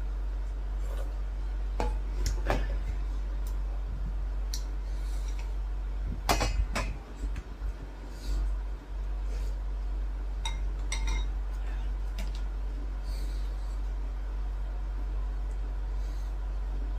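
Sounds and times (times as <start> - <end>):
steady low hum: 0.0 - 16.9
dishes and cutlery clinking: 10.4 - 11.4.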